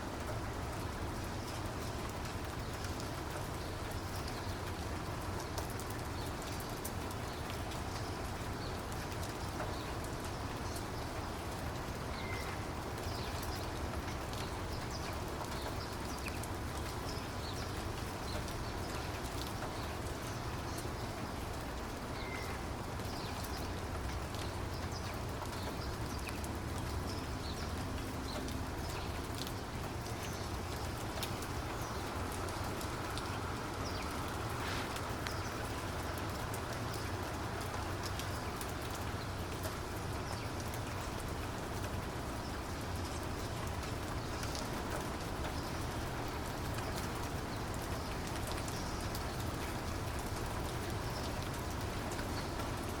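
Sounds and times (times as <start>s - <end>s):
raindrops ticking: 0.0s - 53.0s
steady rainfall hiss: 0.0s - 53.0s.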